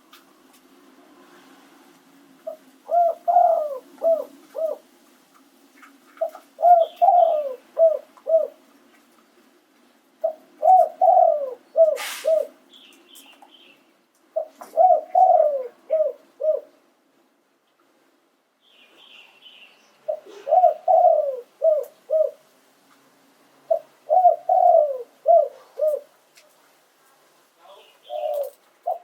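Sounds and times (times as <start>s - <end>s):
dove cooing: 2.4s - 5.0s, 5.8s - 8.7s, 10.2s - 12.6s, 14.3s - 16.8s, 20.1s - 22.5s, 23.7s - 26.2s, 27.6s - 29.0s
brief hiss: 11.9s - 12.5s.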